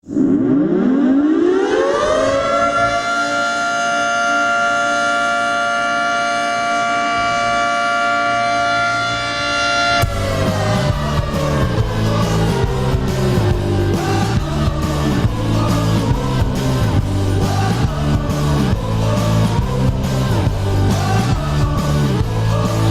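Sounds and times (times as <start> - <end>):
goal horn siren wailing: 0.1 - 22.9
goal song music: 9.7 - 22.9.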